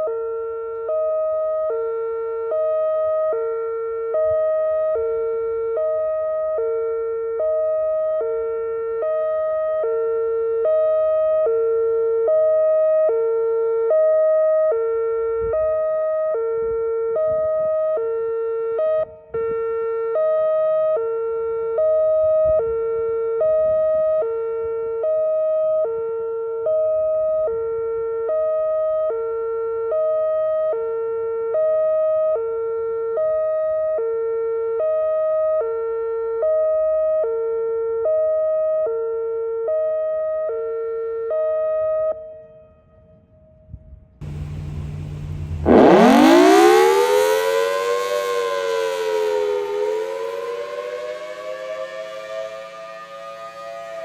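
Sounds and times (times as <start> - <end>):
two-tone door warning alarm: 44.2 - 54.0.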